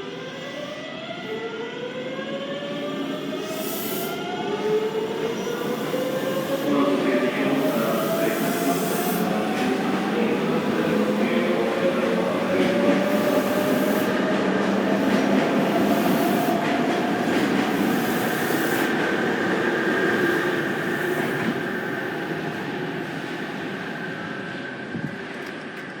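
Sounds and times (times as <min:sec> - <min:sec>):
train wheels rumbling on rail: 0:04.6 - 0:26.0.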